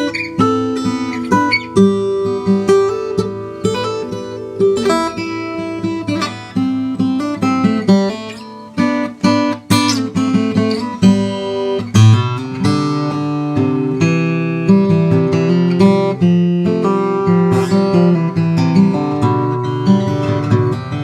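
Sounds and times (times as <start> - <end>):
acoustic guitar picked and strummed: 0.0 - 21.0.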